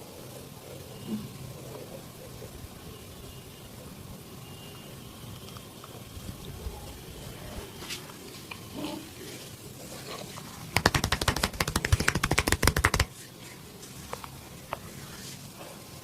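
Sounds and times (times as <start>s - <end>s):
rapid hand slaps: 10.7s - 13.1s.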